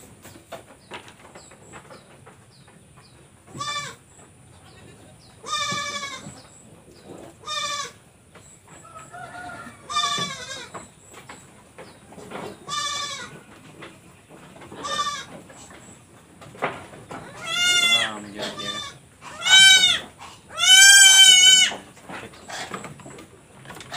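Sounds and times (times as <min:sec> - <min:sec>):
goat bleating: 0:03.5 - 0:04.0, 0:04.7 - 0:06.4, 0:07.4 - 0:08.1, 0:09.8 - 0:10.8, 0:12.6 - 0:13.5, 0:14.7 - 0:15.4, 0:17.2 - 0:21.8.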